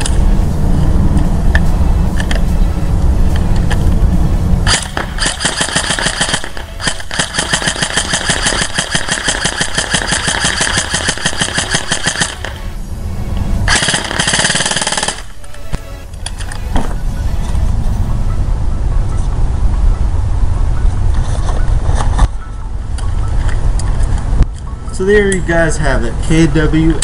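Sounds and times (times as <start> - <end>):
low rumble: 0.0 - 24.6
airsoft rifle rapid fire: 4.7 - 12.8, 13.7 - 15.4.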